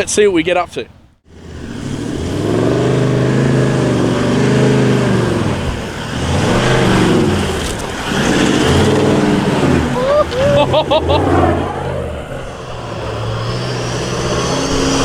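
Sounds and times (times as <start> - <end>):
engine revving: 1.2 - 15.0.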